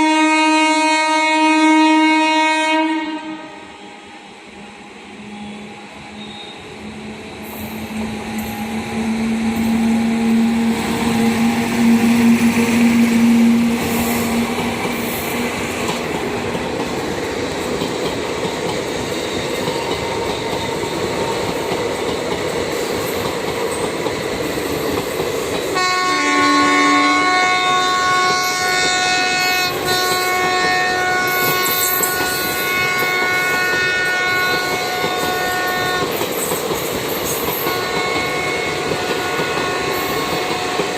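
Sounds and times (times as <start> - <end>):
locomotive multi-tone horn: 0.0 - 4.0, 5.2 - 15.2, 25.8 - 36.2, 37.6 - 40.9
train wheels clattering over rails: 7.0 - 25.8, 28.0 - 40.9.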